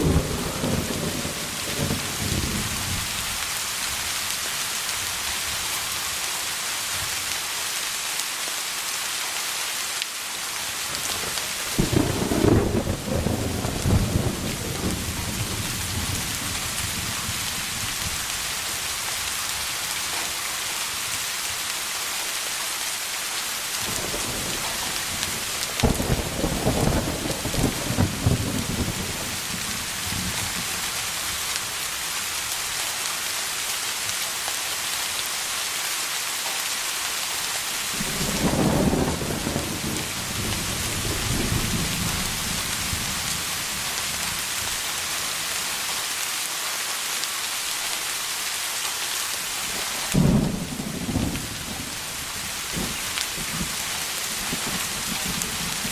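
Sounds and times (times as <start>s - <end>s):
thunder rumbling: 0.0s - 3.4s, 10.9s - 18.1s, 23.8s - 30.8s, 38.0s - 43.8s, 50.1s - 53.8s
rain hissing: 0.0s - 55.9s.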